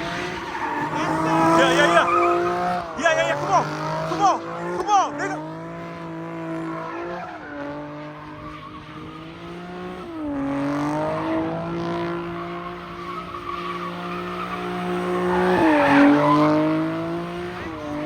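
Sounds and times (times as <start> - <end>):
tyre squeal: 0.0 - 4.4, 12.2 - 16.4
car engine revving high: 0.0 - 18.0.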